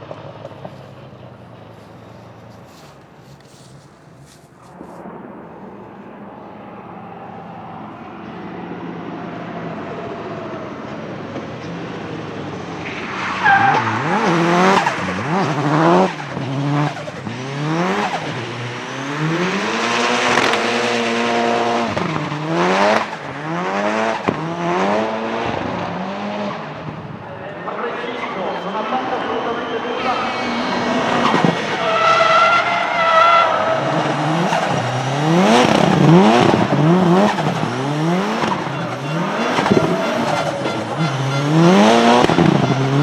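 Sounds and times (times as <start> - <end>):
tyres squealing: 0.0 - 5.0, 27.3 - 43.0
drift car engine revving: 0.0 - 43.0.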